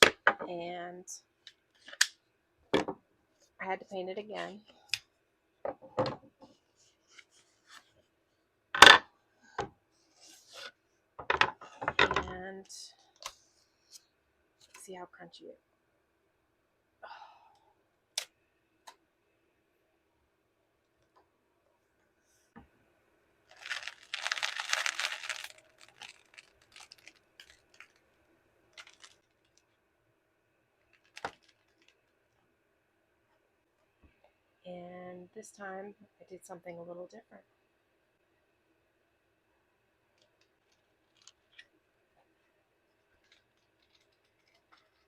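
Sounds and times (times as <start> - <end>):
paperback book being handled: 23.5 - 28.0, 28.8 - 29.6, 31.0 - 31.9.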